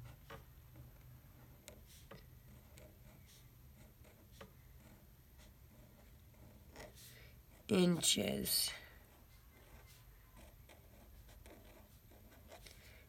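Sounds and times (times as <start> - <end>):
pen writing on paper: 1.4 - 7.6, 9.1 - 12.7.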